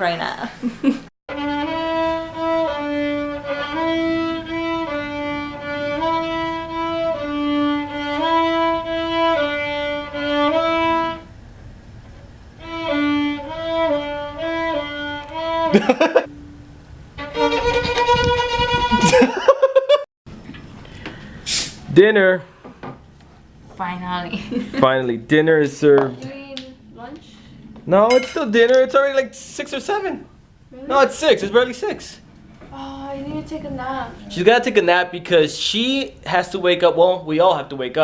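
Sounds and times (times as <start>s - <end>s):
violin tune: 1.3s - 11.3s, 12.6s - 19.2s
wavering pitched sound: 16.2s - 19.0s.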